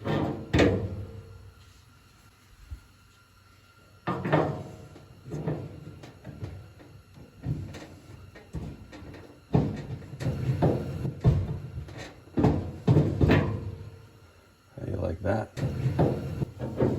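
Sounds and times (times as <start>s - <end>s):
clunks of dryer parts handled: 0.0s - 1.2s, 4.0s - 13.9s, 15.6s - 16.9s.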